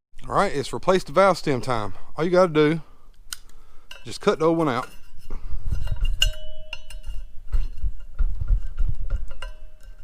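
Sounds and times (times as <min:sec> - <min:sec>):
ringing from metal rim: 0:03.9 - 0:08.1, 0:09.1 - 0:10.0
tool scraping metal wheel rim: 0:04.0 - 0:10.0.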